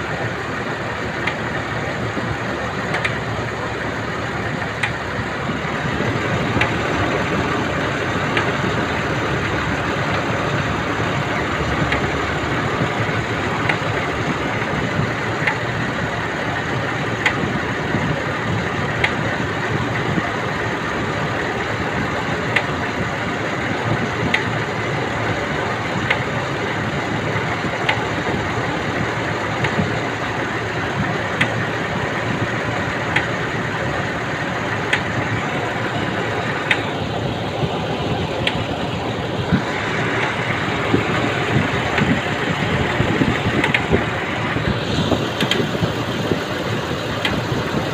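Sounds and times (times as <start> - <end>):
car engine idling: 0.0 - 47.9
sharp repeating tick: 36.6 - 37.0, 43.3 - 44.1, 45.3 - 45.7.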